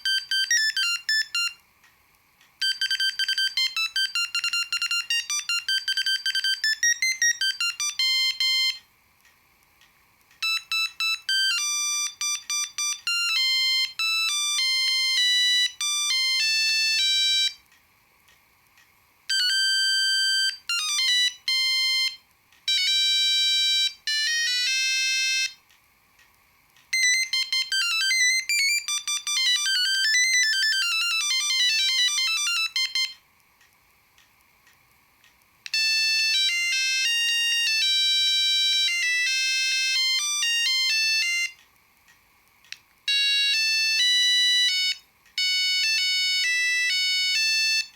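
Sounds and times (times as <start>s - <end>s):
mobile phone beeping ringtone melody: 0.0s - 1.6s, 2.6s - 8.8s, 10.4s - 17.6s, 19.3s - 25.6s, 26.9s - 33.2s, 35.7s - 41.6s, 43.1s - 47.9s.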